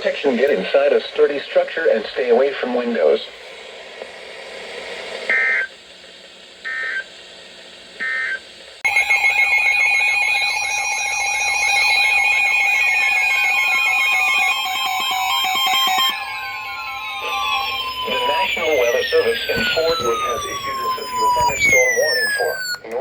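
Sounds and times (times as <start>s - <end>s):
modem-like data bursts: 8.0s - 23.0s
warbling electronic alert alarm: 8.9s - 22.9s.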